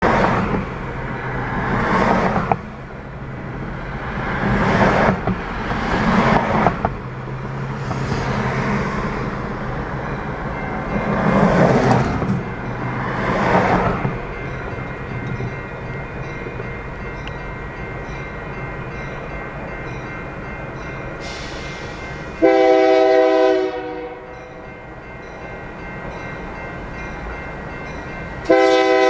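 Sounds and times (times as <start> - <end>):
vehicles passing by: 0.0 - 22.6.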